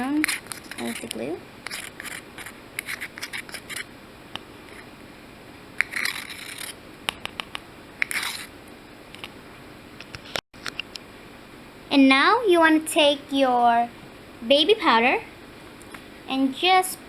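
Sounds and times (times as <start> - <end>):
spoon scraping inside a cup: 0.2 - 3.9, 5.8 - 6.7.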